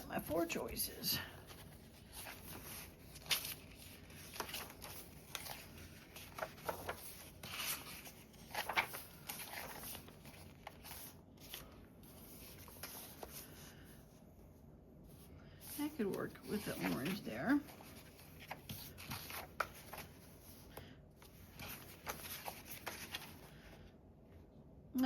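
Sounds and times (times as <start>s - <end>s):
paper cards being shuffled: 1.5s - 13.8s, 16.3s - 23.7s.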